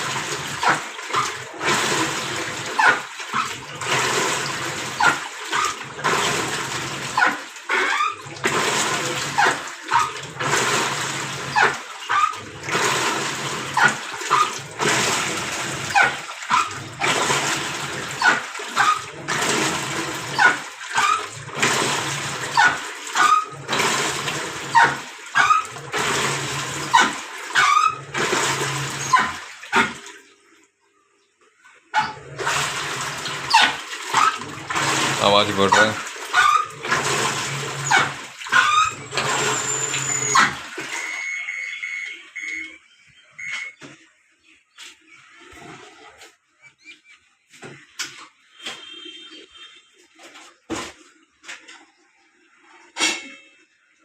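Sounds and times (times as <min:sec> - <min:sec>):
washing machine water sloshing: 0:00.0 - 0:30.7, 0:31.8 - 0:42.8, 0:47.6 - 0:53.2
squealing grind: 0:37.8 - 0:40.7.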